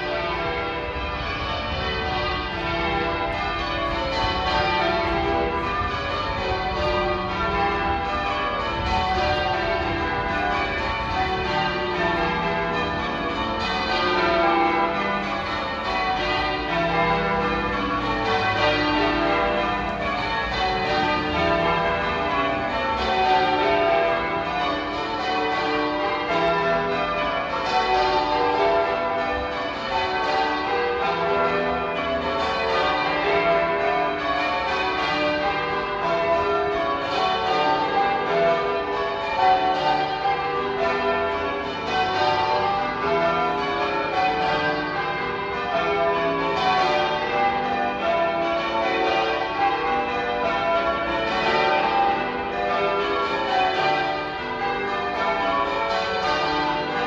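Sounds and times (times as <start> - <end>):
church bells change ringing: 0.0 - 57.0.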